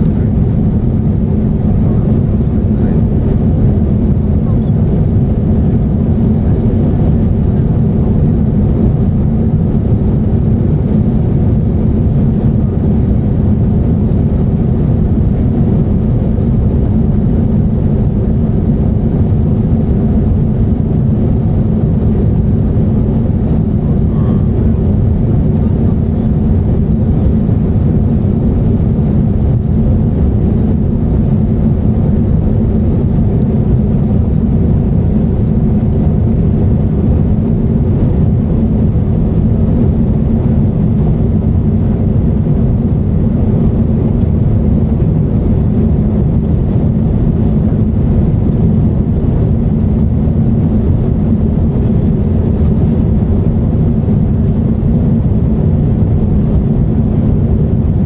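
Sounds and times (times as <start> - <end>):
airplane cabin roar in flight: 0.0 - 58.0.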